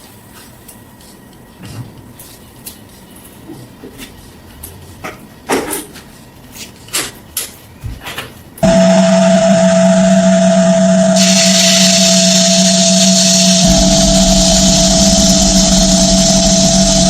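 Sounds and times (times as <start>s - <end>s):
electric power tool running: 8.6s - 17.0s.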